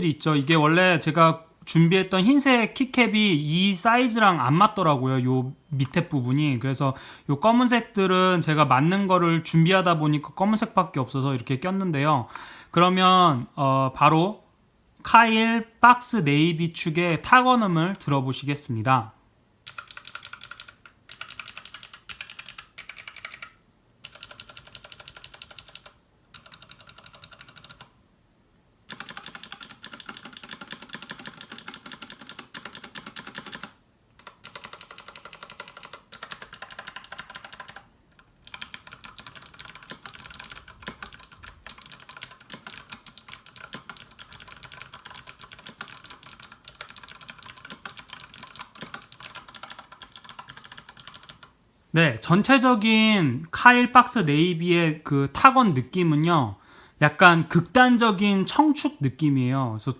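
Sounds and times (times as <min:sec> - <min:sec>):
clicky mechanical keyboard typing: 0:19.6 - 0:27.9, 0:28.9 - 0:51.5.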